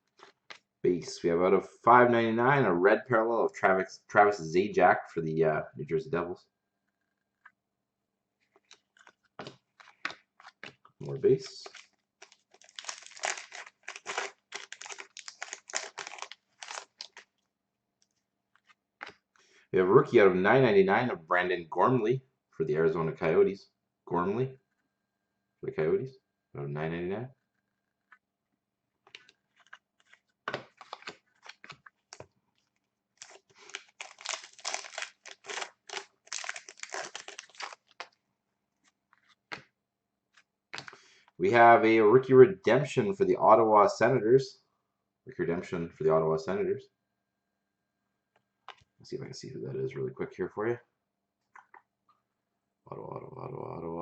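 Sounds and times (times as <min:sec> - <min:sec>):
cards rustling and snapping: 0:08.4 - 0:17.4, 0:18.0 - 0:19.4, 0:29.0 - 0:38.2, 0:38.8 - 0:39.7, 0:40.3 - 0:41.4
foil wrapper crinkling: 0:11.5 - 0:17.4, 0:29.5 - 0:38.2.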